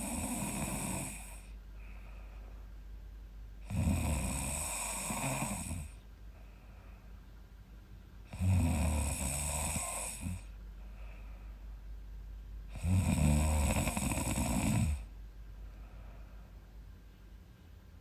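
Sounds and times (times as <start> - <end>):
woman snoring: 0.0 - 1.5, 3.6 - 6.0, 8.3 - 10.5, 12.7 - 15.1
quiet breathing: 0.0 - 17.0.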